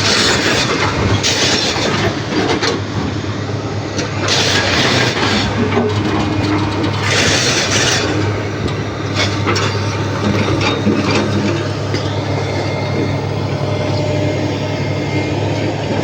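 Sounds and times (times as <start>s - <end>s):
diesel engine humming: 0.0s - 16.0s.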